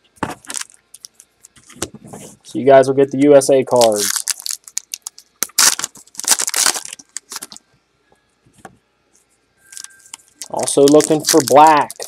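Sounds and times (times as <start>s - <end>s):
packaging crinkling: 0.4s - 1.7s, 3.7s - 7.6s, 9.7s - 12.0s.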